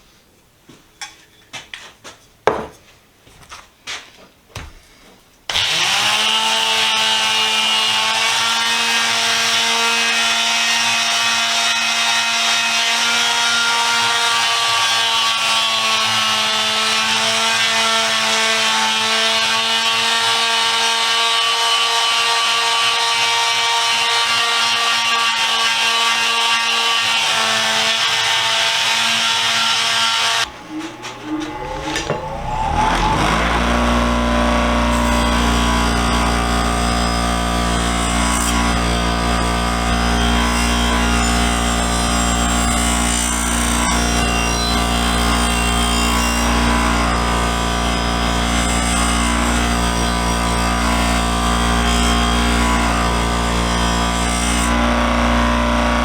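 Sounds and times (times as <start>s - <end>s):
wire wheel scratching steel: 28.0s - 54.7s.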